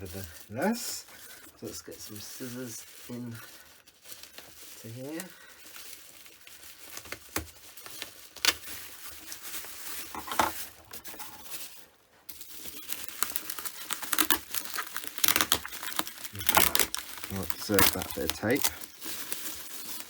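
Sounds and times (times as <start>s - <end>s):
plastic wrapping crinkling: 0.0s - 20.0s
scissors cutting: 12.7s - 19.0s.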